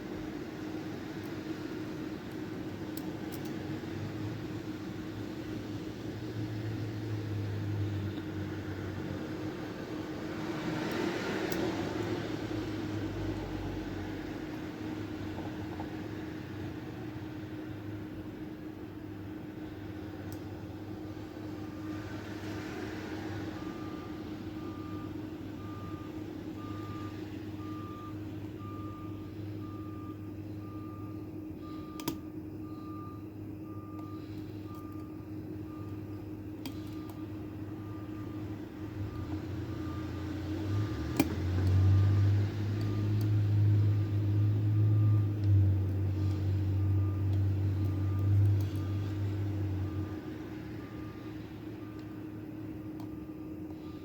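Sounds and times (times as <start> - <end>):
low engine rumble: 0.0 - 54.0
vehicle reversing alarm beeps: 21.4 - 54.0.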